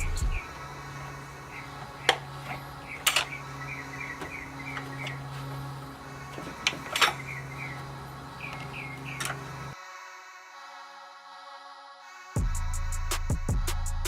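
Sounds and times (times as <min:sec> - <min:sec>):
steady low drone: 0:00.0 - 0:09.8, 0:12.4 - 0:14.0
quiet background music: 0:00.0 - 0:14.0
metallic clicks of hand tools: 0:02.0 - 0:03.4.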